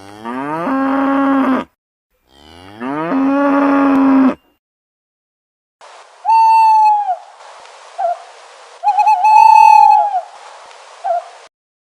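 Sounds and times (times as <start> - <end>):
steady hiss: 5.8 - 11.5
animal calling: 8.8 - 10.3.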